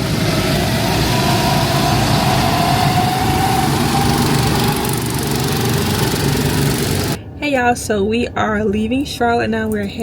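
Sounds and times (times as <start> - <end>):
engine running: 0.0 - 7.2
faint whine rising in pitch: 0.0 - 7.2.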